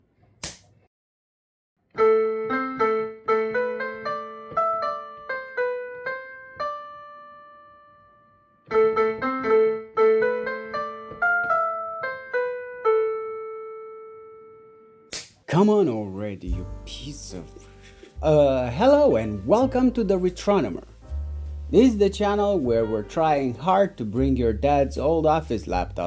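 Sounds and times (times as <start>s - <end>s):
electric piano melody: 2.0s - 15.1s, 16.5s - 24.2s.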